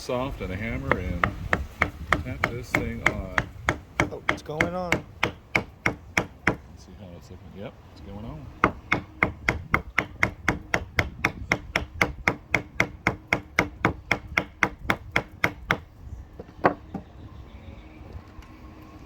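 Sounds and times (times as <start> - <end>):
hammer tapping wood block: 0.7 - 6.6, 8.6 - 15.8, 16.4 - 17.0.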